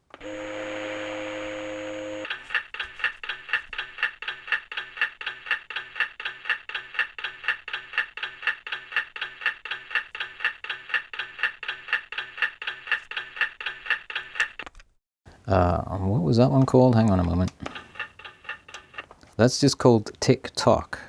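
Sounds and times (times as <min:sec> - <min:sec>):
clock ticking through small speaker: 0:02.2 - 0:14.7, 0:16.5 - 0:19.1.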